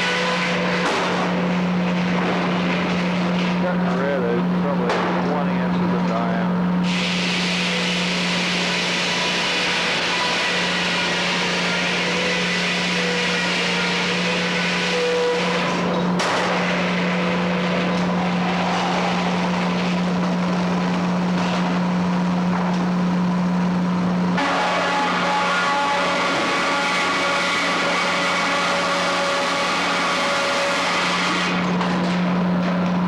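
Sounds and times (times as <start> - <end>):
sawmill engine drone: 0.0 - 33.0
loud hiss: 6.8 - 9.6.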